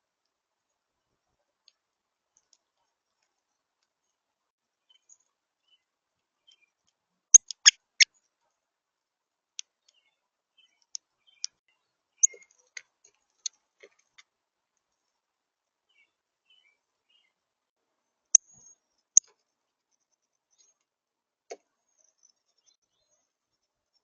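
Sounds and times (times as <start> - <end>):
bird beak pecking seeds: 7.3 - 8.1, 12.2 - 14.2.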